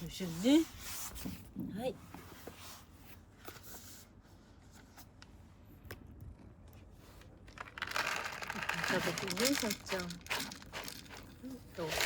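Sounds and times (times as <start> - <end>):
small objects clicking: 7.5 - 11.4.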